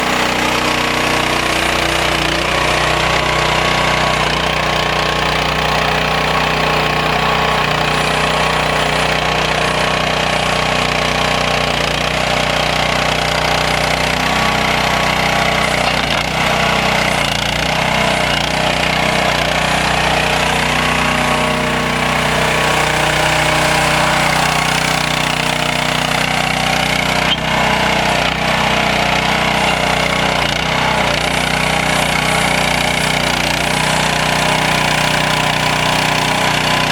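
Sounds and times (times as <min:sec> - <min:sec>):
mini excavator engine running: 0:00.0 - 0:36.9.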